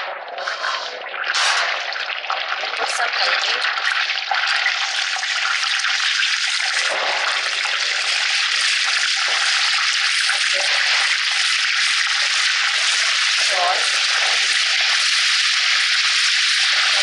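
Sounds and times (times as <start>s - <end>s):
fruit frying in oil: 0.0s - 17.0s.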